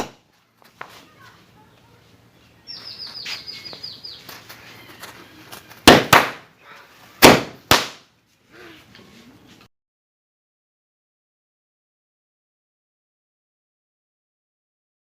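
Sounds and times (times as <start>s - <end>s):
firecrackers banging: 5.6s - 6.5s, 7.2s - 8.1s.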